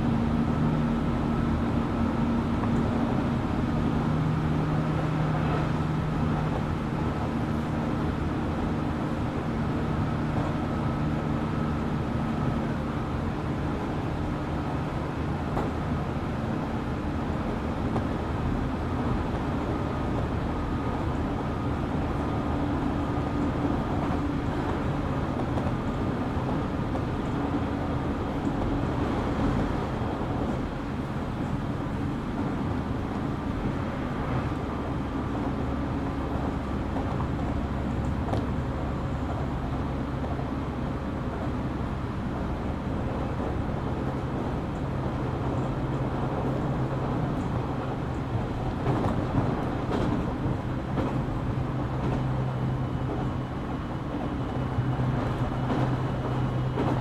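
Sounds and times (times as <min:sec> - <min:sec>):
train wheels rumbling on rail: 0:00.0 - 0:57.0
train motor and gear whine: 0:18.0 - 0:57.0.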